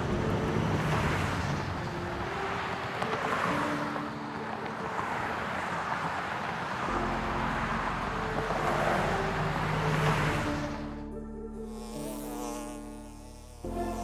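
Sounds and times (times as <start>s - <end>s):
traffic rushing on road: 0.0s - 11.0s.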